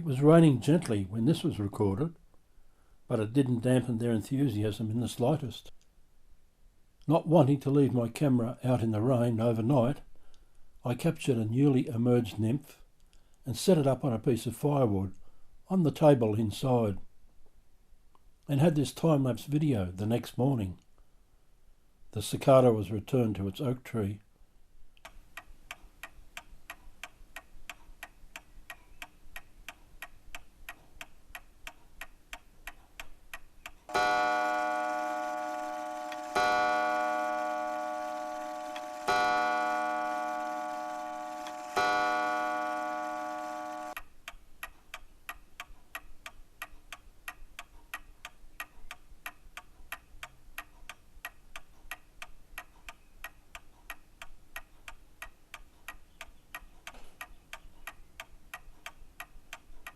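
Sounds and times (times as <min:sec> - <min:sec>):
clock ticking: 0:25.0 - 0:59.9
loud clock chime strikes: 0:33.9 - 0:44.0.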